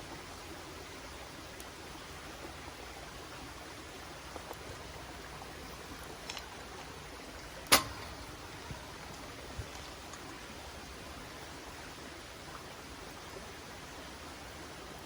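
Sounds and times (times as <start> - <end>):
campfire crackling: 0.0 - 15.0
river rushing: 0.0 - 15.0
fire popping: 4.3 - 10.4.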